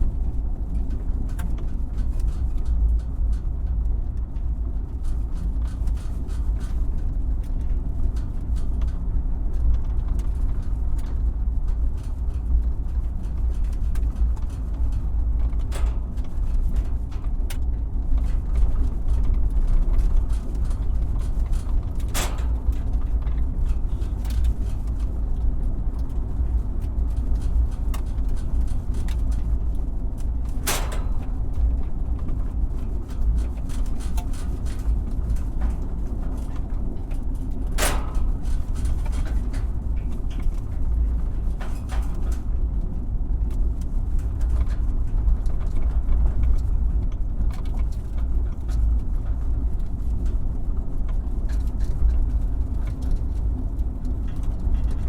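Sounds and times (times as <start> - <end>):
knocks and rattles over bumps: 0.2 - 55.0
truck rumbling: 12.4 - 46.9.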